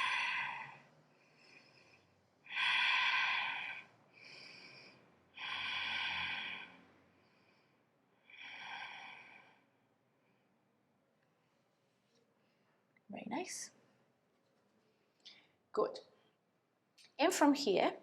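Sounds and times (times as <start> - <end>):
person breathing slowly: 0.0 - 10.6.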